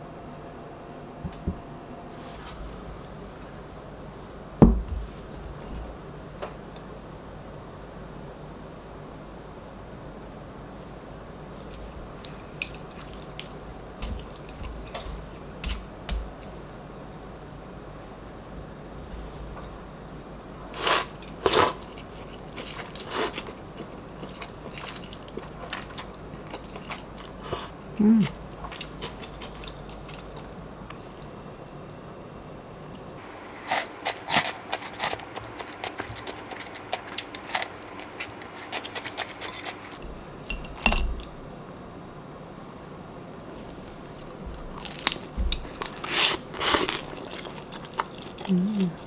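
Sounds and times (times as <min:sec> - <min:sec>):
soft chewing: 0:11.6 - 0:17.3, 0:18.0 - 0:32.1, 0:32.9 - 0:40.0, 0:43.6 - 0:49.0.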